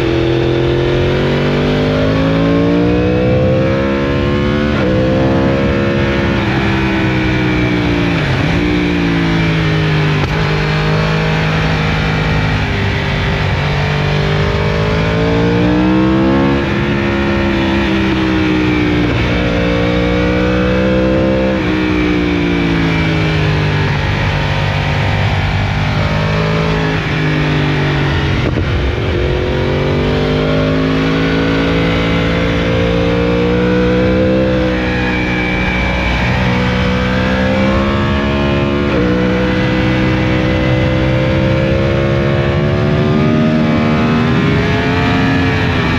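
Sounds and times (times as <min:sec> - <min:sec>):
motorcycle engine revving: 0:00.0 - 0:45.9.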